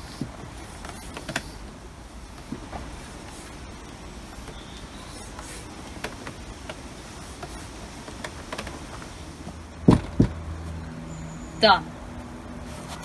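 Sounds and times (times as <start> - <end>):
sharp knocks: 9.8 - 10.6.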